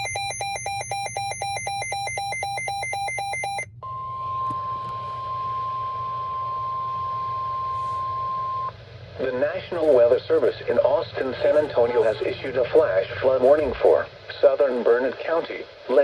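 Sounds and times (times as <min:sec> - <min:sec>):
rapid electronic beeping: 0:00.0 - 0:03.7
steady alarm tone: 0:00.0 - 0:08.7.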